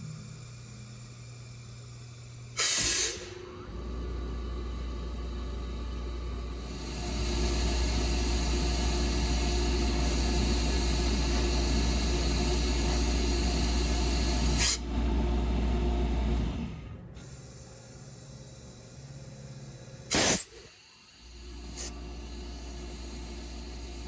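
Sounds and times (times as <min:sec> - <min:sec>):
air compressor running: 0:00.0 - 0:24.0
sharp hiss: 0:02.6 - 0:03.3, 0:20.1 - 0:20.7.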